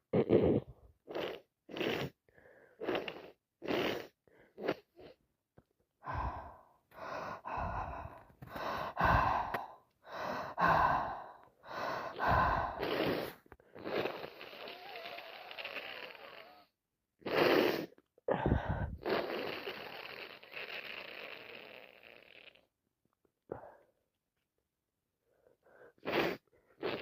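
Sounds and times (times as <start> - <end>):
person gasping: 6.0 - 13.4, 18.3 - 19.1.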